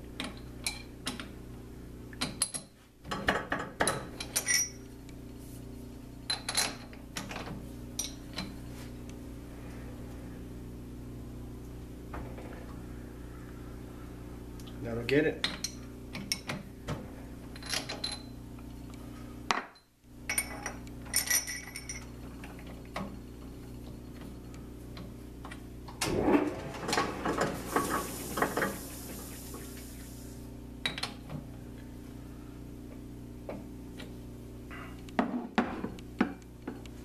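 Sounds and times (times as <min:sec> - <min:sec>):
electrical hum of converter: 0:00.0 - 0:37.0
metal tools clattering: 0:03.9 - 0:04.8, 0:19.8 - 0:22.1
high hiss: 0:27.6 - 0:30.5.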